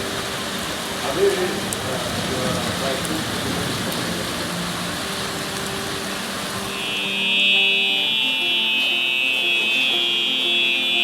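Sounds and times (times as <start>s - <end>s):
background music: 0.0s - 11.0s
heavy rain hissing: 0.0s - 11.0s
bright high melody: 4.3s - 11.0s.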